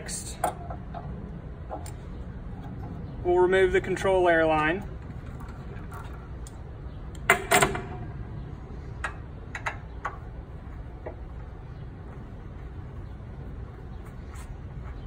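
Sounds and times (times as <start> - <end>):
loud metal clunk with ring: 7.3 - 8.1.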